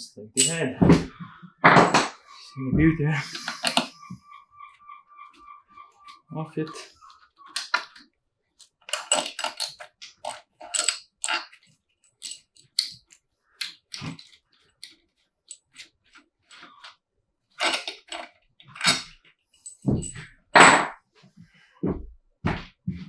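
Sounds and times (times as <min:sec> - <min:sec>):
metal tools and parts clinking: 0:00.4 - 0:02.4, 0:08.9 - 0:15.8, 0:17.6 - 0:21.0.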